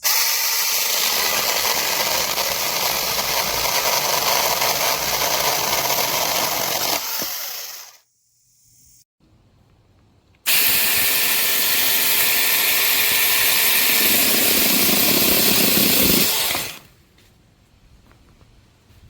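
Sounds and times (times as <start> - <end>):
electric mini chainsaw running: 0.0 - 8.0, 10.5 - 16.9.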